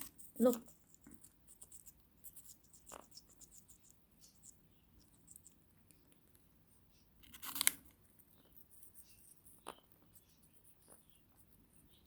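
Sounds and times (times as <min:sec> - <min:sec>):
parrot beak crunching apple: 0:07.2 - 0:08.0.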